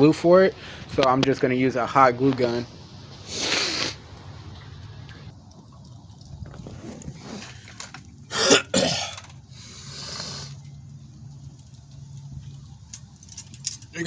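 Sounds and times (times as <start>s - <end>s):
man coughing: 8.3s - 9.2s.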